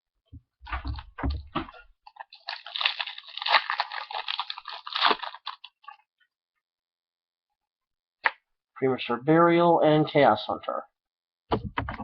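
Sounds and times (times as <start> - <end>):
foil pack bumping: 2.0 - 6.0
foil pack tearing and crinkling: 2.0 - 6.0.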